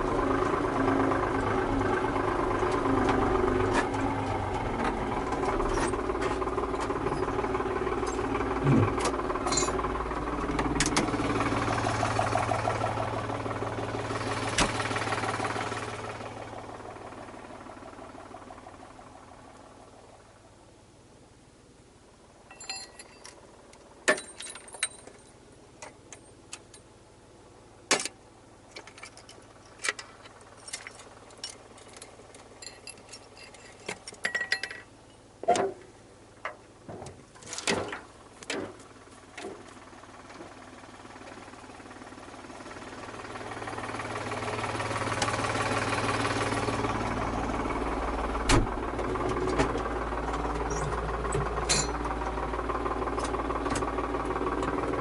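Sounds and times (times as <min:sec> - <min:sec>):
tractor engine running: 0:00.0 - 0:55.0
metallic clicks and knocks: 0:27.9 - 0:38.8.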